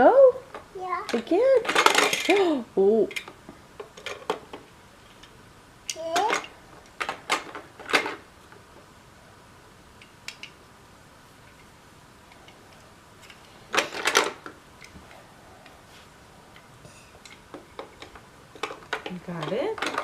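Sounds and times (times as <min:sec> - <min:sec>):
clatter of sharp knocks: 0:17.5 - 0:20.0.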